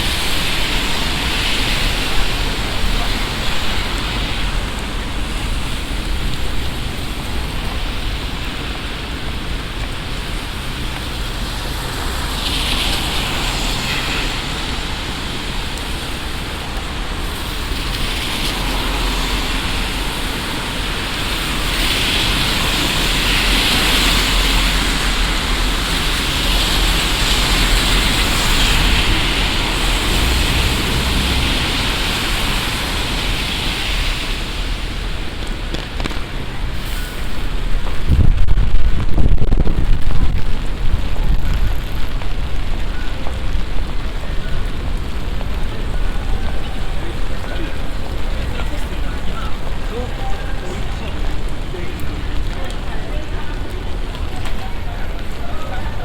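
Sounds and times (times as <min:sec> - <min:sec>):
heavy rain falling: 0:00.0 - 0:56.0
low rumble: 0:35.7 - 0:43.3.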